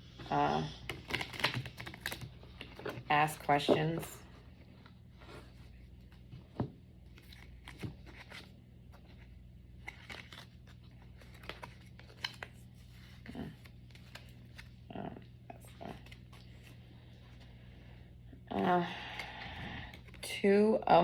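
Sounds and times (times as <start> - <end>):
cards rustling and sliding: 7.0 - 14.8.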